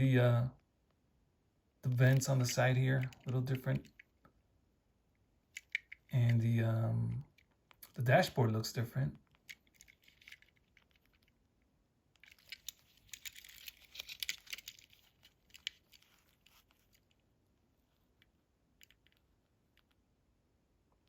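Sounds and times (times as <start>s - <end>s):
toy cars clicking and crinkling: 1.9s - 4.2s, 5.5s - 6.4s, 9.2s - 11.4s, 12.1s - 17.3s, 18.0s - 20.0s.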